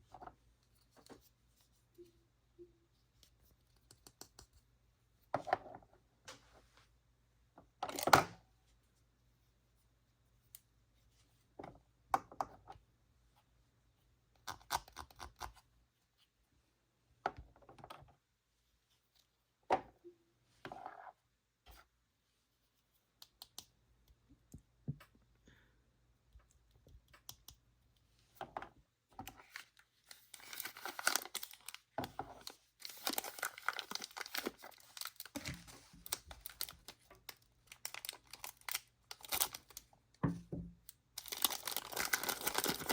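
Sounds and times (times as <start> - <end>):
packaging clicks and rustles: 29.4 - 39.9, 41.2 - 42.9
packaging crinkling and tearing: 29.4 - 39.9, 41.2 - 42.9.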